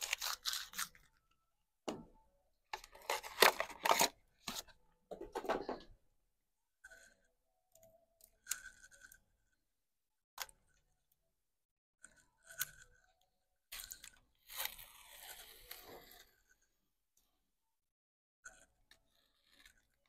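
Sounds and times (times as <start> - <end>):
packaging crinkling and rustling: 0.0 - 1.1, 2.8 - 4.6.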